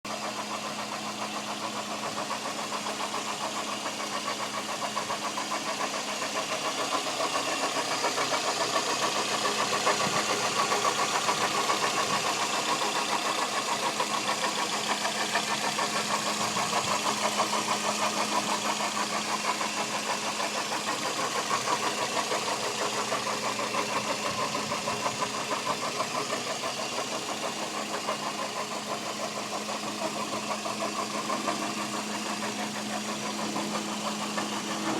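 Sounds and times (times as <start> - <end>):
car engine idling: 0.1 - 34.9
rapid engine ticking: 0.1 - 34.9.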